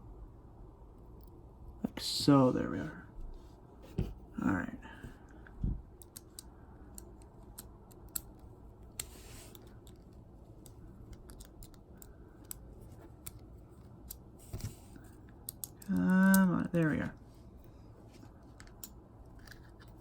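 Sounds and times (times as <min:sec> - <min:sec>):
plastic toy parts clicking: 0:06.0 - 0:10.0, 0:10.6 - 0:14.2, 0:15.4 - 0:16.8
soft rub: 0:09.0 - 0:09.8.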